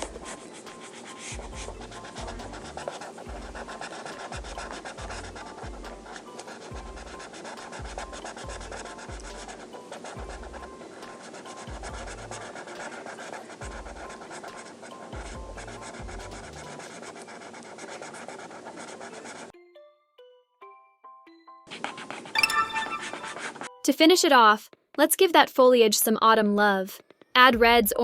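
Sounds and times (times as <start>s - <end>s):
scratchy colouring on paper: 0.0s - 19.5s, 21.7s - 23.8s.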